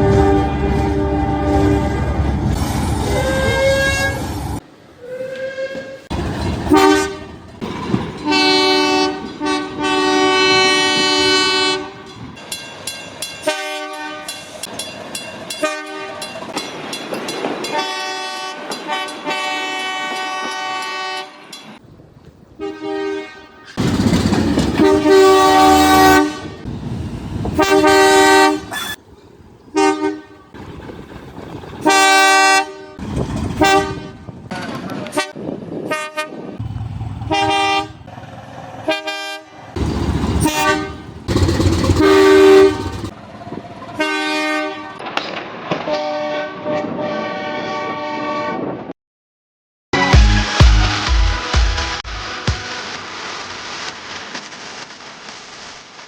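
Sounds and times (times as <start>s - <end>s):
train horn blasts: 0.0s - 2.3s, 3.2s - 4.4s, 5.0s - 6.1s, 6.7s - 7.4s, 8.2s - 12.1s, 13.4s - 14.5s, 15.6s - 16.4s, 17.6s - 21.6s, 22.6s - 23.8s, 24.8s - 26.7s, 27.6s - 29.0s, 29.7s - 30.5s, 31.8s - 33.0s, 33.6s - 36.6s, 37.2s - 38.1s, 38.8s - 39.8s, 40.4s - 43.2s, 44.0s - 45.1s, 45.7s - 48.9s
moving train rushing: 0.0s - 22.0s, 23.1s - 47.1s, 50.4s - 54.9s.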